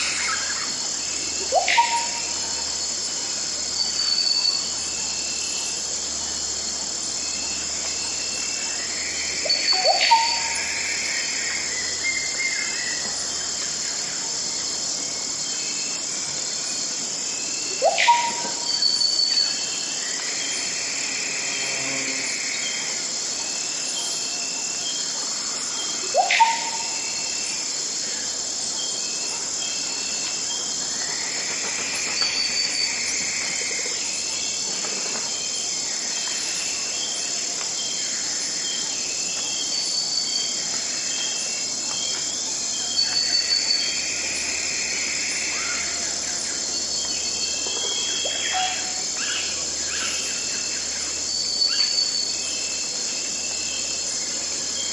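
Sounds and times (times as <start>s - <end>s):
insects shrilling: 0.0s - 54.9s
lower insect song: 0.0s - 54.9s.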